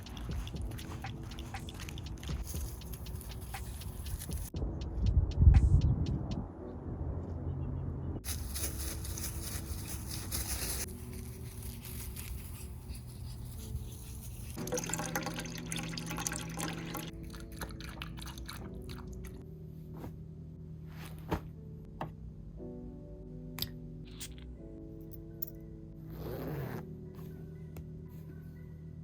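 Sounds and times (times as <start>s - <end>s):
water running or pouring: 14.6s - 19.3s.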